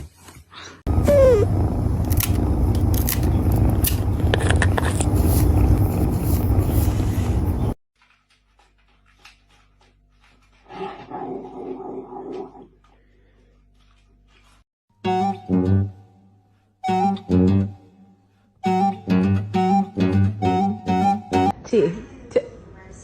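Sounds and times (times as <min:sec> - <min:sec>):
dog whining: 0:00.9 - 0:01.9
dog growling: 0:00.9 - 0:02.6, 0:10.6 - 0:12.8.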